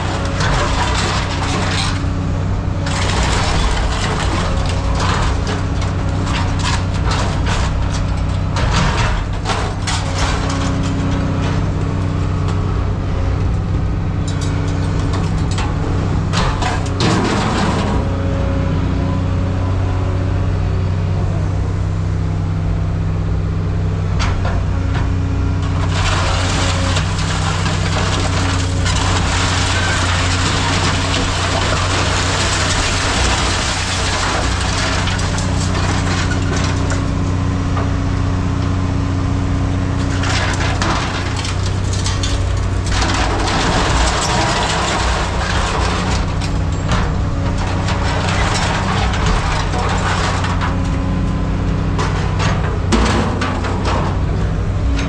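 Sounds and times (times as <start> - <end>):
knocks and clatter: 0.0 - 2.2, 2.9 - 11.9, 14.2 - 18.1, 24.2 - 37.9, 39.9 - 55.0
engine running steadily: 0.0 - 55.0.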